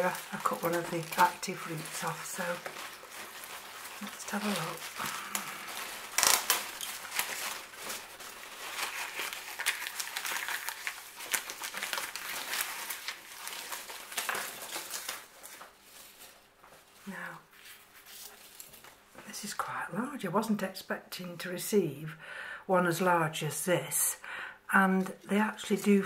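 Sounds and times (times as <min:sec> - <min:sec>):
packaging crinkling and rustling: 0:00.0 - 0:19.2.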